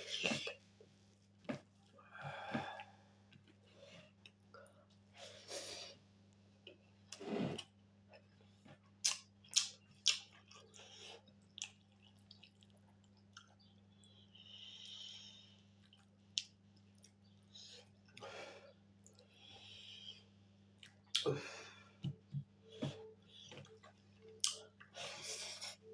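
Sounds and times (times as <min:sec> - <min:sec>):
person chewing food: 0:07.5 - 0:15.0, 0:15.6 - 0:18.3, 0:20.7 - 0:21.4.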